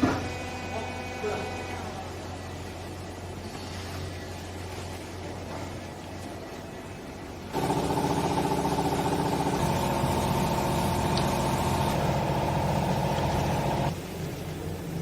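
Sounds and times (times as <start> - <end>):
hydraulic pump motor running: 7.5 - 13.9.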